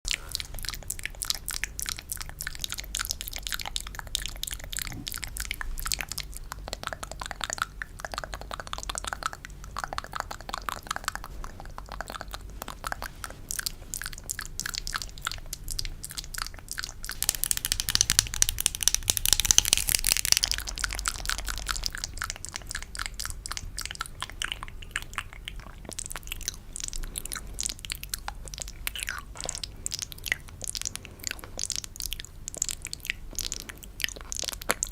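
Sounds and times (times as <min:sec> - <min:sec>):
wet mouth clicks and smacks: 0:00.1 - 0:34.9.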